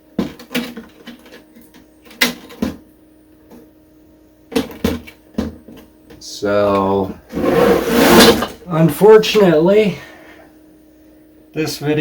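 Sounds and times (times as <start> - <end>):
plastic parts clicking and knocking: 0.2 - 2.8.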